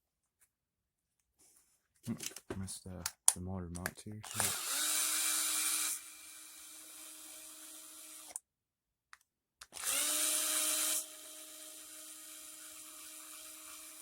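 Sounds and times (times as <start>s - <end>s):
power drill motor whining: 4.2s - 8.4s, 9.7s - 14.0s.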